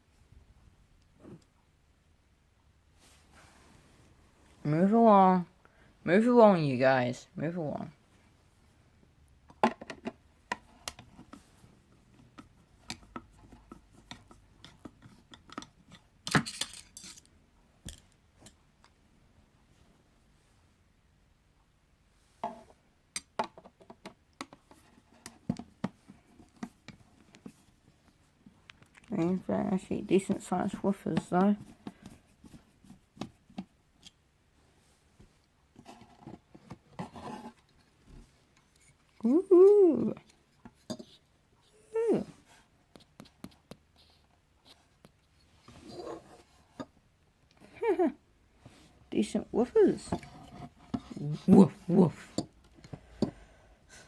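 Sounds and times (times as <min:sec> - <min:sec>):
hard parts and screws clattering: 0:15.6 - 0:17.3.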